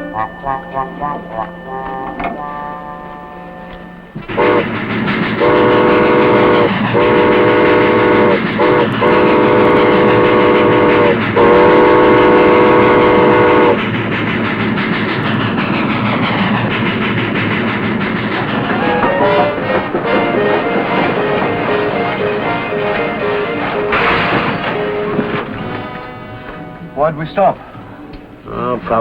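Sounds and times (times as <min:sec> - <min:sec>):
steam train whistle blasts: 0:00.0 - 0:14.0, 0:18.4 - 0:27.2
rumble and clatter of moving train: 0:00.0 - 0:29.0.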